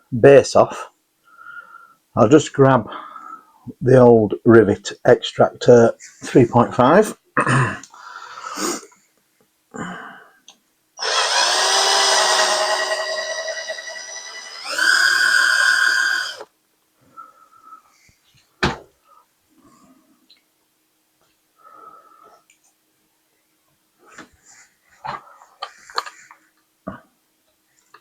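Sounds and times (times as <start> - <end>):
power drill whining: 11.0 - 16.5.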